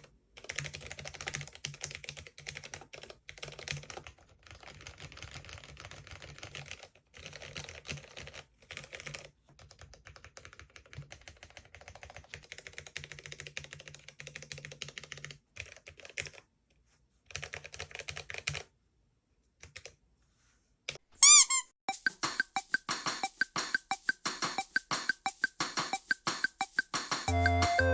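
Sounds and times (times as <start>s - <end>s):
mechanical keyboard typing: 0.0s - 16.5s, 17.3s - 18.8s.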